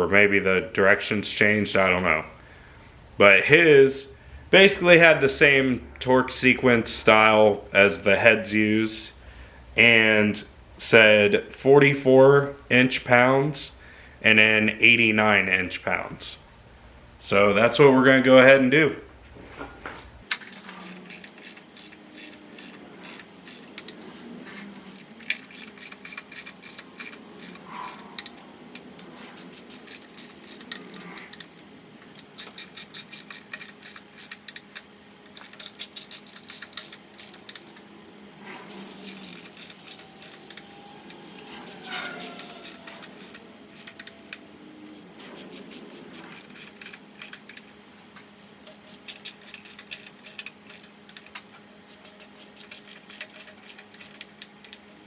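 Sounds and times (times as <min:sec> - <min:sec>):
ratcheting wrench clicking: 0:20.2 - 0:24.1, 0:24.7 - 0:55.0.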